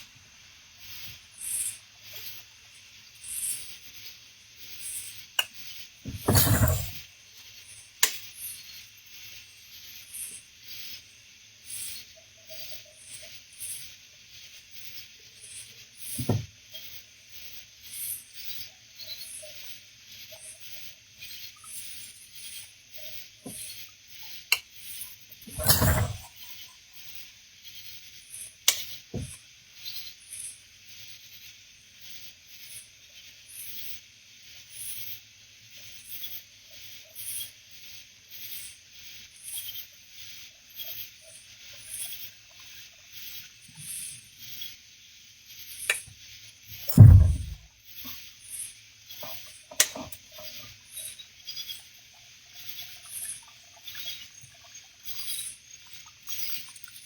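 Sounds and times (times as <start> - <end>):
night insect chorus drone: 0.0 - 46.9, 48.3 - 57.0
sharp knocks: 46.9 - 47.6
high insect chirp: 50.4 - 57.0.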